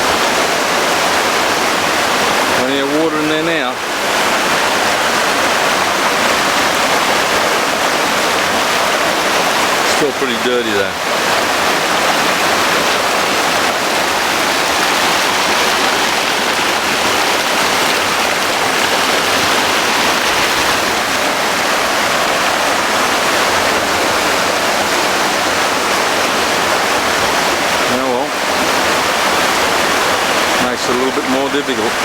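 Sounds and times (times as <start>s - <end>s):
flooded river roaring: 0.0s - 32.0s.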